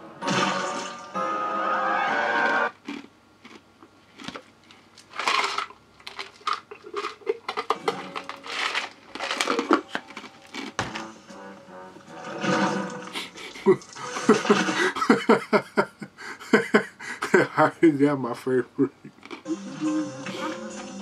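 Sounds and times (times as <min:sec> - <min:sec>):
cartoon clicks and rustles: 0:04.2 - 0:11.0.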